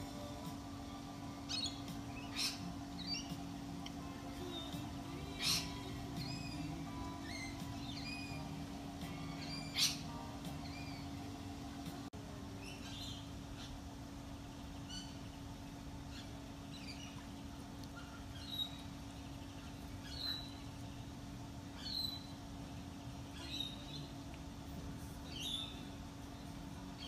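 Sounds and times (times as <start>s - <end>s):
steady low hum: 0.0s - 27.0s
small bird chirping: 1.4s - 3.5s, 4.4s - 11.2s, 16.1s - 21.0s, 25.2s - 26.0s.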